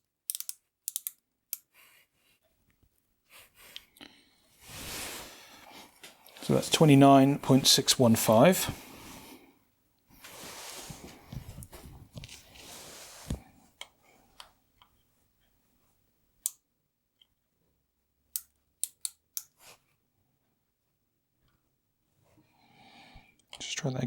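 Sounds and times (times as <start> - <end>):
micrometer clicks: 0.3 - 1.2
rustling scraping: 10.2 - 13.4.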